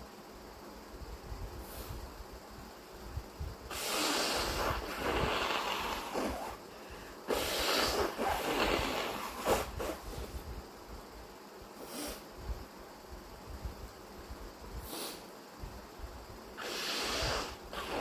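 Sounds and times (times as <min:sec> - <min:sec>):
person breathing hard and snorting: 0:03.7 - 0:10.3, 0:11.8 - 0:12.3, 0:14.8 - 0:15.3, 0:16.6 - 0:18.0.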